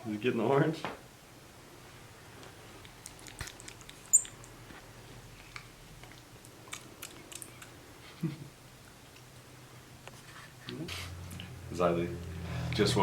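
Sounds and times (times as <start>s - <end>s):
monkey high squeak: 4.1s - 4.4s.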